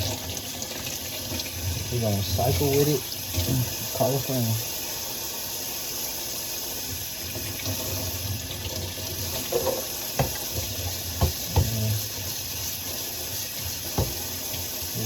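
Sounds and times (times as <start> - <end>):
tap water running into sink: 0.0 - 15.0
dishware knocking: 9.4 - 10.4, 14.0 - 14.2.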